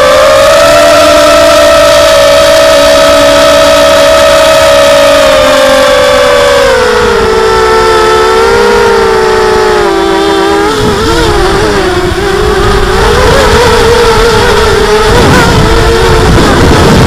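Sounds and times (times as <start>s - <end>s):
quadcopter motors whining: 0.0s - 17.0s
low rushing noise: 10.7s - 17.0s.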